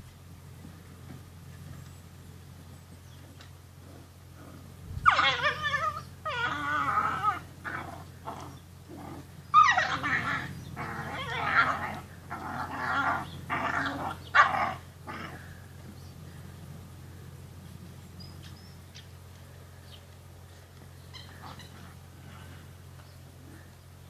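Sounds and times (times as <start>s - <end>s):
puppies yipping and growling: 3.8s - 16.8s, 21.0s - 22.7s
puppies yelping and whining: 5.0s - 15.6s, 21.1s - 22.1s.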